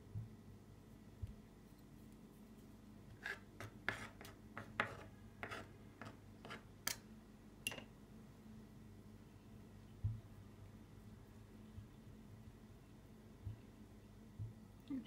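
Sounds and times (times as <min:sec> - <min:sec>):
knife scraping on cutting board: 0:03.2 - 0:06.7.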